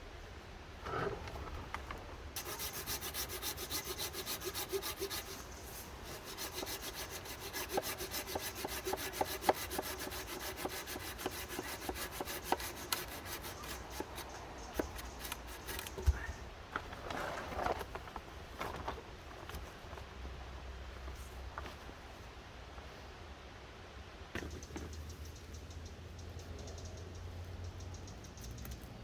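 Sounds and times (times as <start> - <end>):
hand saw cutting wood: 0.8 - 1.6, 2.4 - 16.2.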